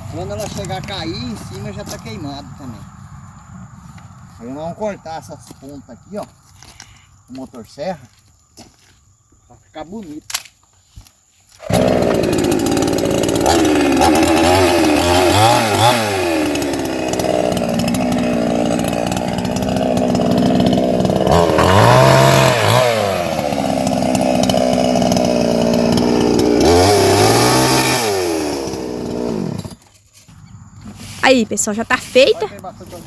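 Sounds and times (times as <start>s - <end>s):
chainsaw cutting wood: 11.5s - 30.1s.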